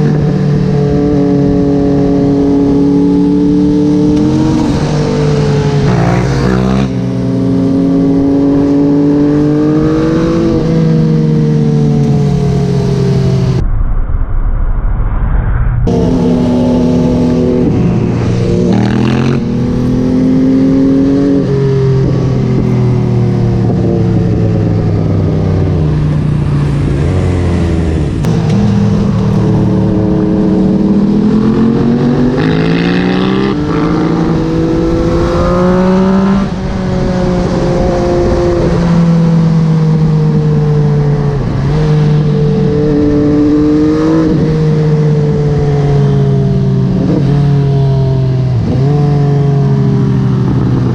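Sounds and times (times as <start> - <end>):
motorcycle engine revving: 0.0 - 13.6, 15.9 - 50.9.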